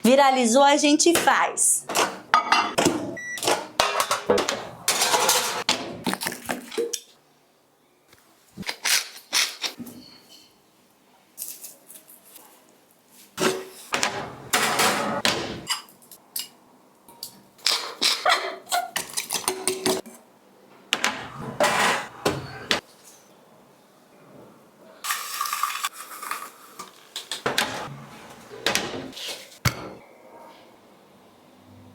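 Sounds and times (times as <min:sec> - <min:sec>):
kitchenware clattering: 0:01.9 - 0:07.0, 0:13.4 - 0:20.2, 0:21.0 - 0:22.8.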